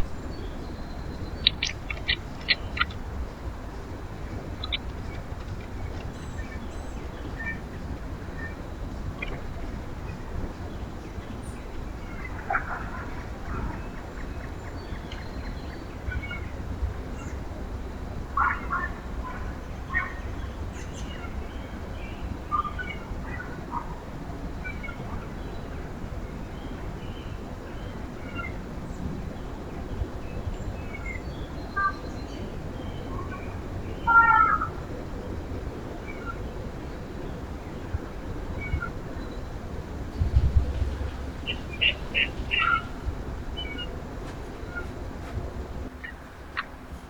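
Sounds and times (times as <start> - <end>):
low rumble: 0.0 - 0.7, 39.6 - 45.9
songbirds chirping: 0.0 - 47.0.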